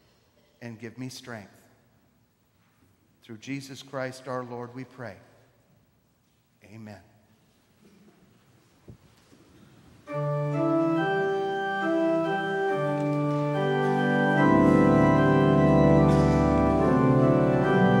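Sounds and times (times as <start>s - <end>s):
organ playing sustained chords: 10.0s - 18.0s
deep bass organ notes: 10.1s - 18.0s.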